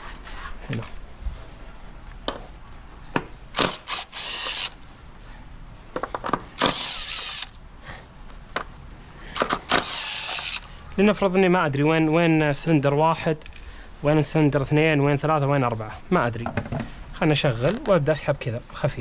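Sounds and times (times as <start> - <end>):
ratchet wrench ratcheting: 3.6 - 4.8, 6.6 - 7.6, 9.4 - 10.8.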